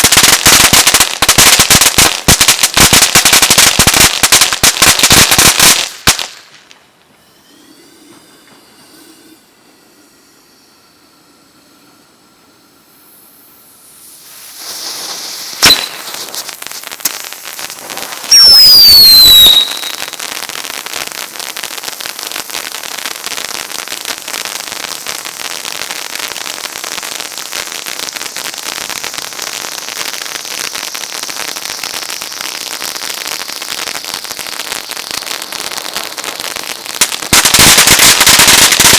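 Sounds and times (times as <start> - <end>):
sharp firework crack: 0.0 - 7.0, 13.0 - 38.9
firework spraying with hiss and crackle: 0.0 - 38.9
loud falling whistle: 7.1 - 13.7, 18.2 - 20.2.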